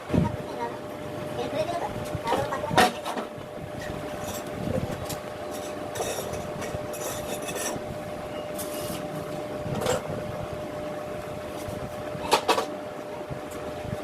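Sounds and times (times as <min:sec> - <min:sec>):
steady hum: 0:00.0 - 0:14.0
metal tools scraping and clinking: 0:03.8 - 0:04.5, 0:05.4 - 0:09.1.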